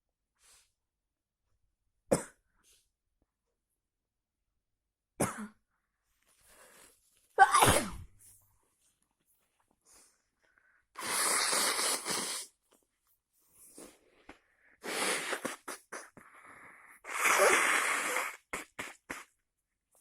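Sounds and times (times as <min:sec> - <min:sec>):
person sneezing: 0:07.4 - 0:08.1, 0:14.8 - 0:16.2, 0:17.1 - 0:19.3
wheezy breaths: 0:13.5 - 0:19.3.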